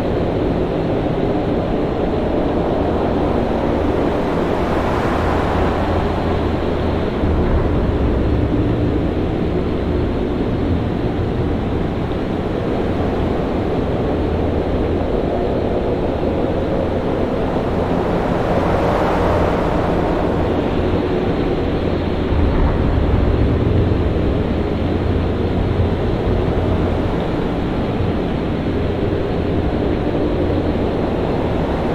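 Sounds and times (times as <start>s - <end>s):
wind and surf rumble: 0.0s - 31.9s.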